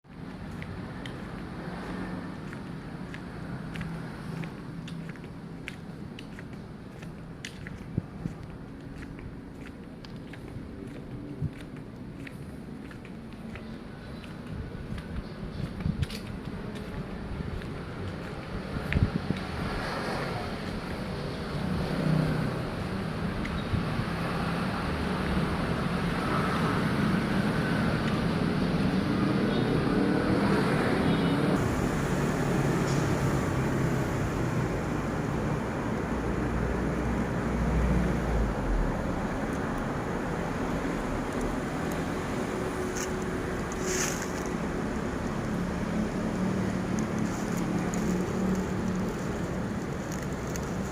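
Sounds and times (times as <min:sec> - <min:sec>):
traffic noise: 0:00.0 - 0:50.9
low engine hum: 0:00.1 - 0:50.9
wind on microphone: 0:14.4 - 0:21.0.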